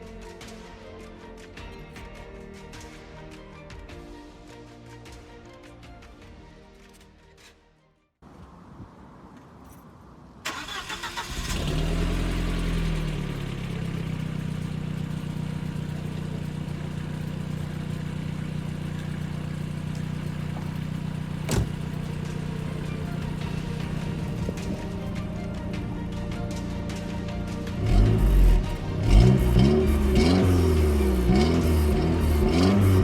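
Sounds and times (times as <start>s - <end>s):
engine starter cranking: 10.5s - 13.1s, 18.8s - 24.6s
car engine revving and idling: 10.5s - 33.0s.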